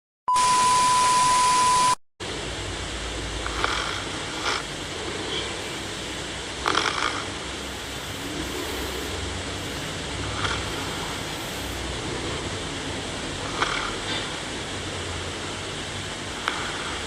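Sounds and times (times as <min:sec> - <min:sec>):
steady hiss: 0:02.2 - 0:17.0
person snoring: 0:03.4 - 0:11.9.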